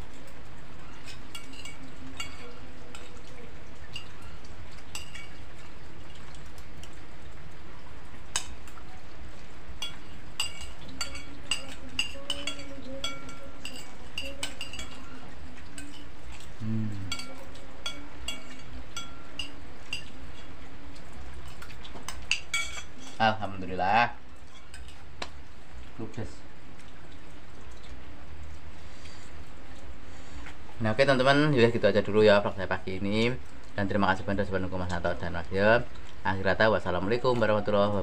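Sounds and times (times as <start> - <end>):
spoon clinking on plate: 9.8 - 15.1, 17.1 - 20.2, 22.1 - 23.2.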